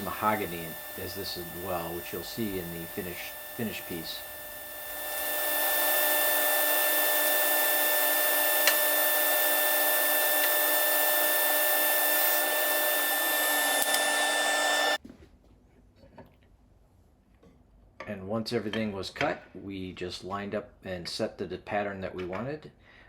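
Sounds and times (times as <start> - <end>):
power saw cutting wood: 0.0 - 15.0.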